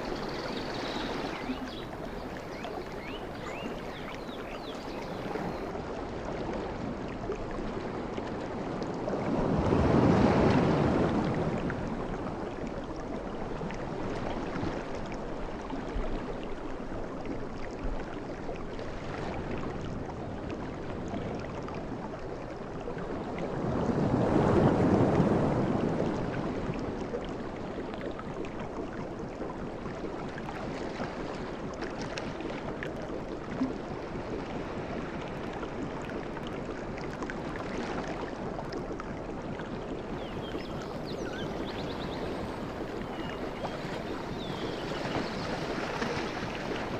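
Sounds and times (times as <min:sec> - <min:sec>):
sea waves washing onto beach: 0:00.0 - 0:05.8, 0:39.3 - 0:46.9.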